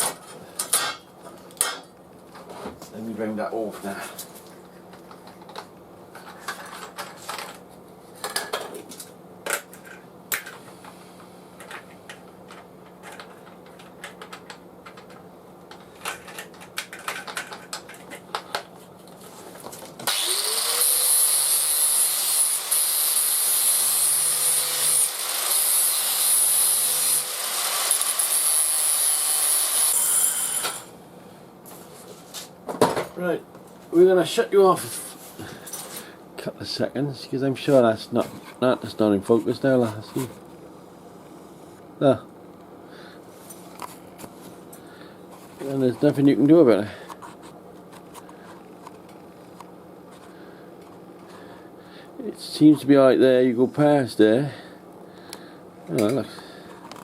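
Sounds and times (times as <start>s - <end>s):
small parts clicking and tapping: 11.6s - 18.7s
small electric power tool running: 20.0s - 30.9s.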